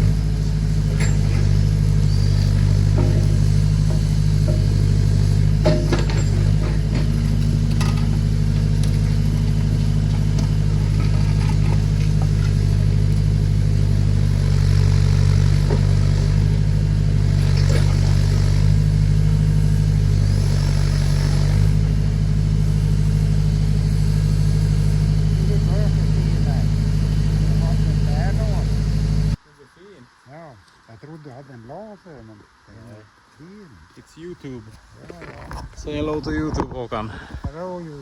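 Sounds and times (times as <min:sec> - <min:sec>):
tractor engine running: 0:00.0 - 0:29.4.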